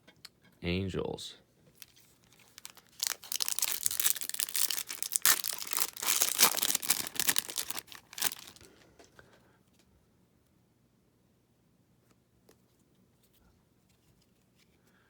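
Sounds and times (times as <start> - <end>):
foil wrapper tearing and crinkling: 1.8 - 8.7.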